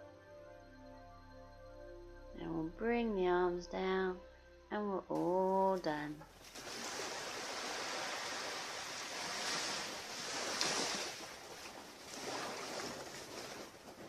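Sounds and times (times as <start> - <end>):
sea surf washing onto beach: 6.5 - 14.0.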